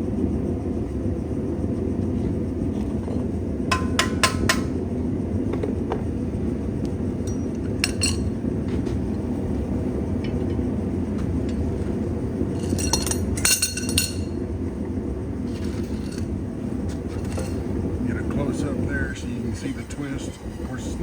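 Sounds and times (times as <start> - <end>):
low rumble: 0.0 - 21.0
metal tools clinking on steel: 7.3 - 8.4, 12.5 - 14.3.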